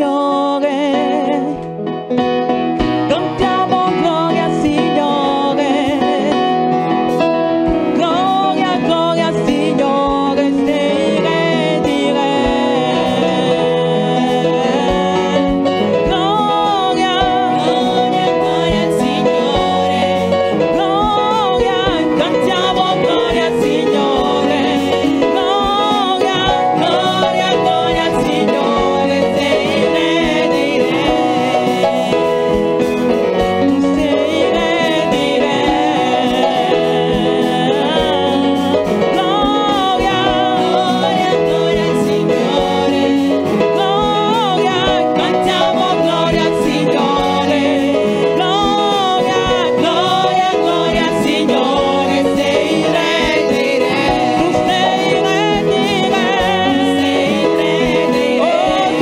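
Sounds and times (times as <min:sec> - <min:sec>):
praise song with instruments: 0:00.0 - 0:59.0.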